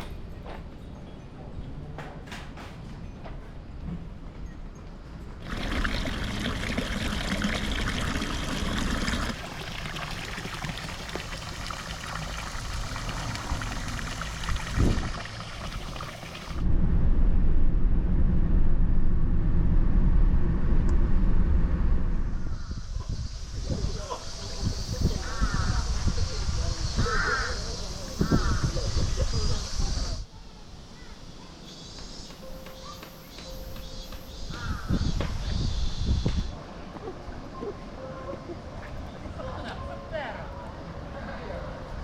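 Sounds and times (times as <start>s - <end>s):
water rushing and trickling: 5.4s - 16.7s.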